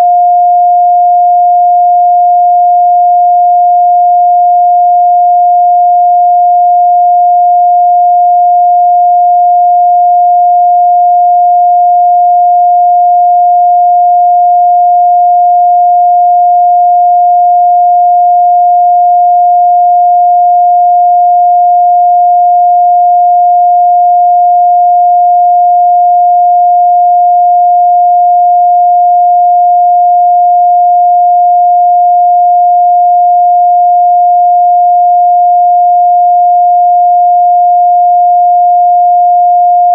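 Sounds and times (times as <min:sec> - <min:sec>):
sine wave test tone: 0:00.0 - 0:39.9.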